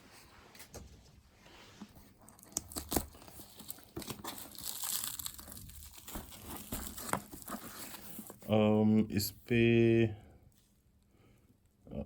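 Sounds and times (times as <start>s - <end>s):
packaging crinkling and rustling: 1.8s - 8.6s.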